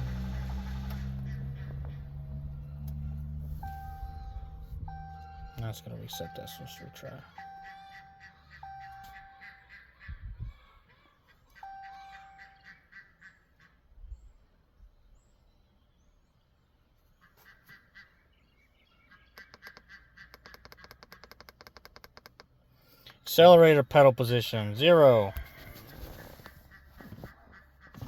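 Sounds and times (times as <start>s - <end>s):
faint electronic beep: 3.6s - 9.7s, 11.6s - 12.7s.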